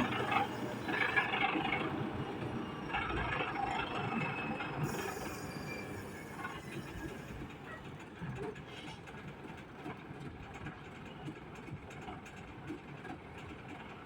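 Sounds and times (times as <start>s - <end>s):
wheel loader running: 0.0s - 6.7s.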